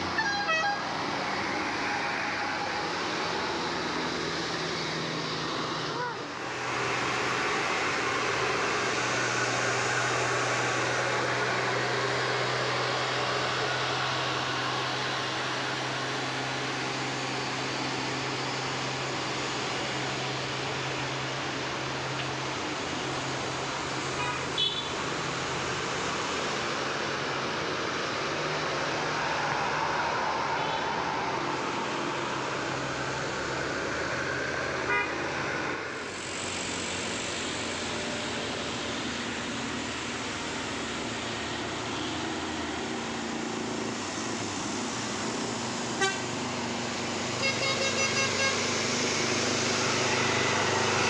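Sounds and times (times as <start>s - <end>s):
bus engine running: 0.0s - 51.0s
road noise: 0.0s - 51.0s
bus horn toot: 0.2s - 0.8s, 24.2s - 24.9s, 34.9s - 35.2s, 46.0s - 46.3s, 47.4s - 48.8s.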